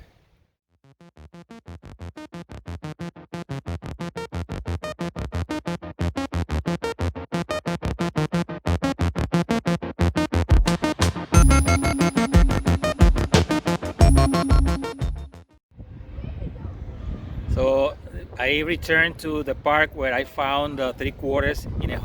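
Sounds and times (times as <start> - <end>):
rapid repeated synthesizer notes: 10.8 - 15.3.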